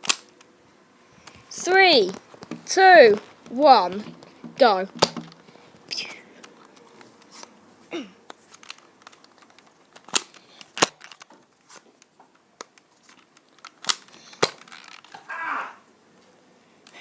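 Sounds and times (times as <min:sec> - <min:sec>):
toy foam-dart blaster pops: 0:05.0 - 0:05.4, 0:13.8 - 0:14.8.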